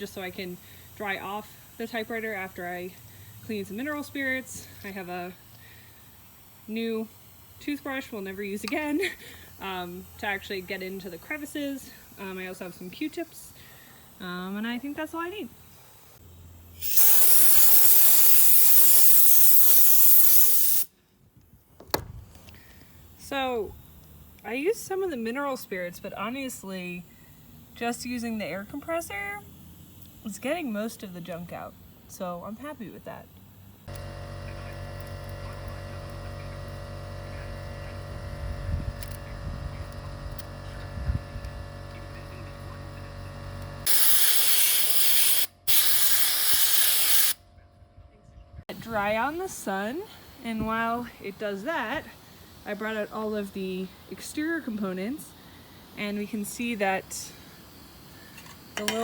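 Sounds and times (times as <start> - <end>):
compressed air blow gun hissing: 16.8 - 20.9, 29.5 - 47.4, 48.8 - 59.0
low steady hum: 26.9 - 43.9.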